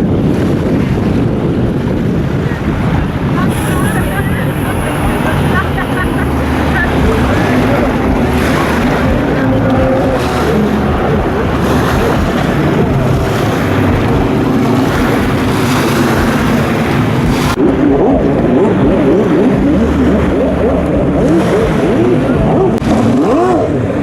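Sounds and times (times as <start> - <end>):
jet ski engines revving: 0.0 - 24.0
water hiss: 3.4 - 14.0.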